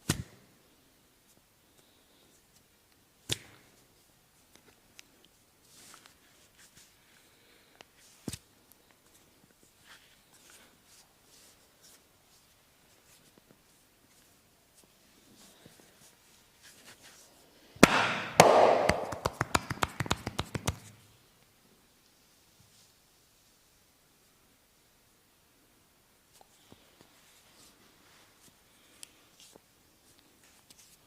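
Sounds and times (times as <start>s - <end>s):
sharp cracks and slaps: 0.0s - 0.4s, 3.3s - 3.7s, 17.8s - 21.0s
soft hand handling: 1.2s - 17.7s, 26.3s - 31.0s.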